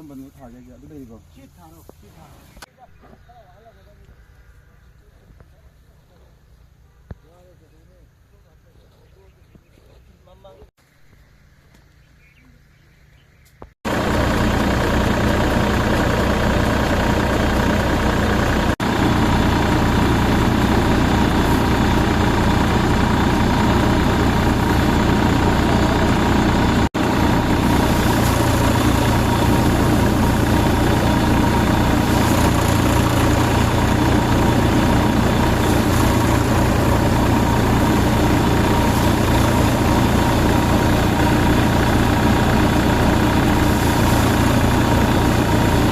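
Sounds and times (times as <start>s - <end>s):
harvester engine running: 13.5s - 45.9s.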